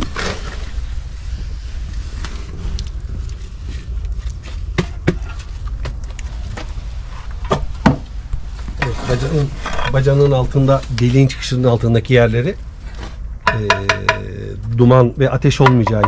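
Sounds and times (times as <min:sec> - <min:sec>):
trowel tapping bricks: 0:13.5 - 0:14.4, 0:15.4 - 0:16.0.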